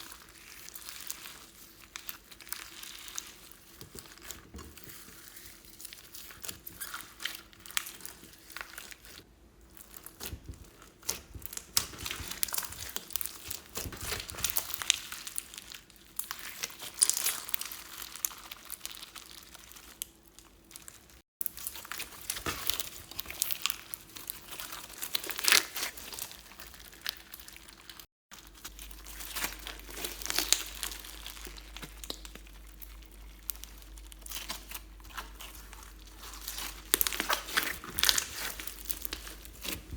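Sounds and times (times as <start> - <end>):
slime squished by hand: 0.0 - 39.9
sticky crackling and pops: 6.2 - 21.0.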